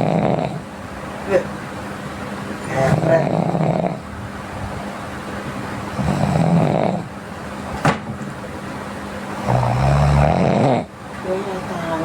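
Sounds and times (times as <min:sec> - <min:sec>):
person snoring: 0:02.8 - 0:04.0, 0:06.0 - 0:07.1, 0:09.5 - 0:10.9.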